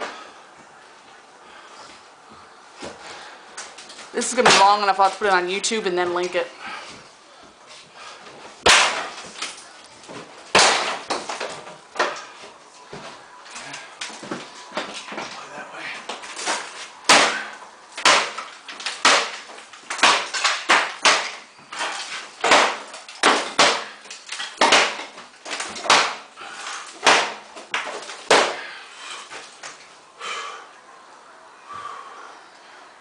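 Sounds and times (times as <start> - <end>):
breaking wall material crashing: 3.7 - 5.2, 8.6 - 12.4, 16.0 - 29.8.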